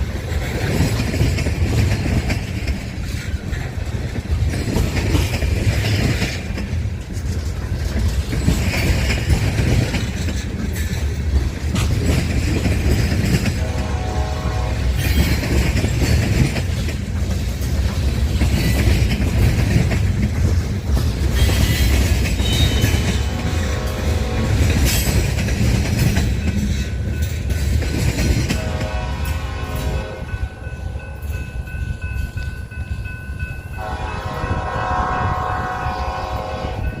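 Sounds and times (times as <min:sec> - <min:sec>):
freight train rumbling past: 0:00.0 - 0:37.0
locomotive air horn blast: 0:13.6 - 0:15.0, 0:22.4 - 0:24.9, 0:28.5 - 0:31.0, 0:33.8 - 0:37.0.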